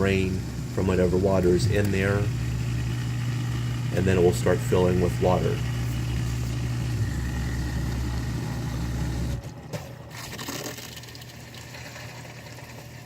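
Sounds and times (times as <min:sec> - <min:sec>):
dishwasher drain pump humming: 0:00.0 - 0:13.0
dishwasher filling with water: 0:08.6 - 0:13.0.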